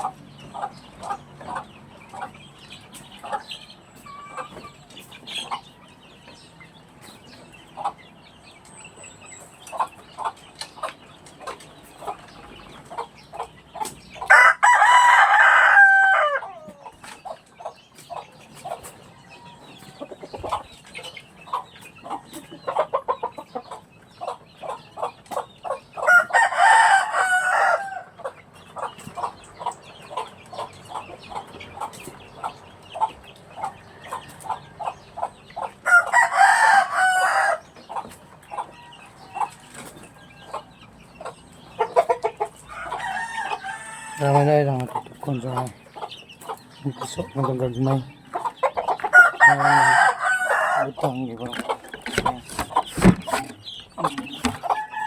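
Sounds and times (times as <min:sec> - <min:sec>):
chickens clucking: 0:00.0 - 0:55.0
rooster crowing: 0:14.3 - 0:16.8, 0:26.1 - 0:28.1, 0:35.9 - 0:37.6, 0:42.7 - 0:44.4, 0:49.1 - 0:50.9, 0:54.6 - 0:55.0.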